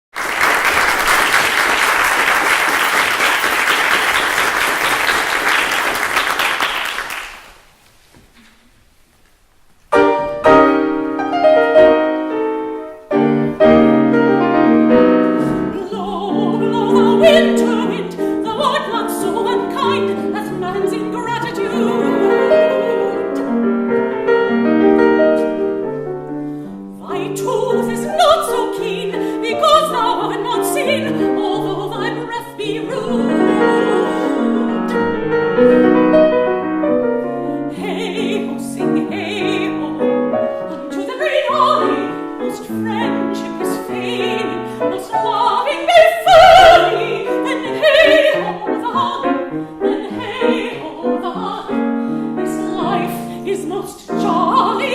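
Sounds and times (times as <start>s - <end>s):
audience applause: 0.1s - 7.7s
piano accompaniment: 9.9s - 54.9s
classical singing voice with vibrato: 10.0s - 54.9s.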